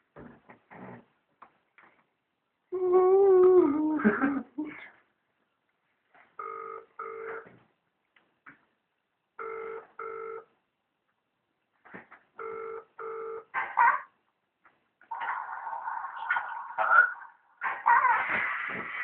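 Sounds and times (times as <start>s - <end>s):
telephone ringback tone: 6.4s - 7.4s, 9.4s - 10.5s, 12.4s - 13.5s.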